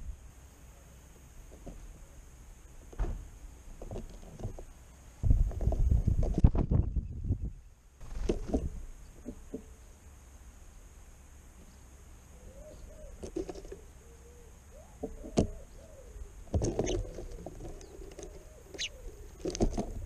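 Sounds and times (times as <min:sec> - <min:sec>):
dove cooing: 0:12.3 - 0:19.8.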